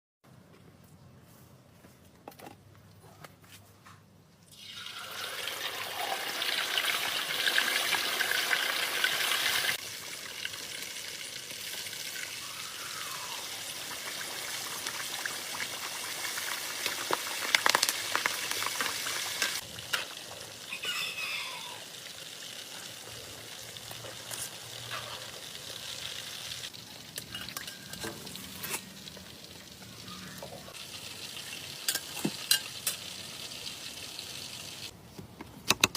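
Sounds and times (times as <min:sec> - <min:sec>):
food sizzling in hot oil: 0:04.5 - 0:34.9.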